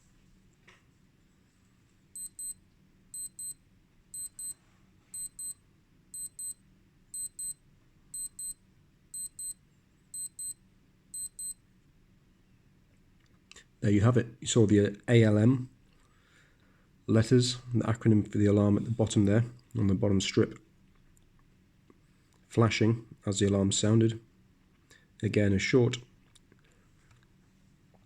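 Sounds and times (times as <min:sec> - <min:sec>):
wristwatch alarm double beeps: 0:02.2 - 0:02.6, 0:03.2 - 0:04.6, 0:05.2 - 0:05.6, 0:06.2 - 0:06.6, 0:07.2 - 0:07.6, 0:08.2 - 0:08.6, 0:09.2 - 0:09.6, 0:10.2 - 0:10.6, 0:11.2 - 0:11.6.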